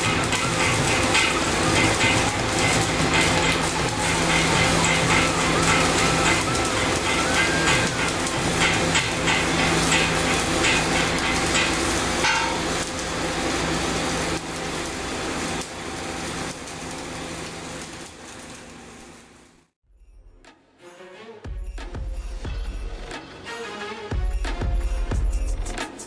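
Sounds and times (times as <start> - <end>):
welding arc crackling and sputtering: 0.0 - 19.8.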